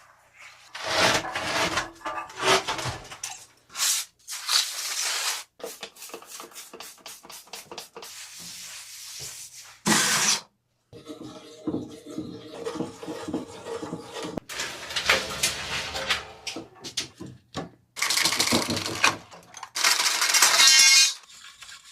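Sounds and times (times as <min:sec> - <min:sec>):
scraping and rubbing: 0:00.3 - 0:10.5, 0:11.1 - 0:17.1.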